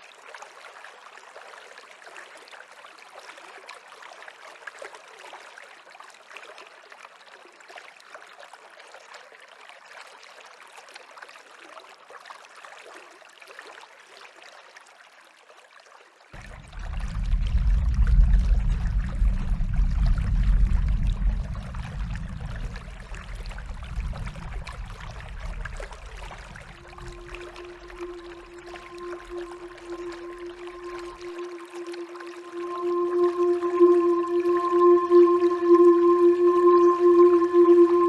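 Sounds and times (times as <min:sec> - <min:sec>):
stream water trickling: 0:00.0 - 0:38.0
low wind rumble: 0:16.4 - 0:38.0.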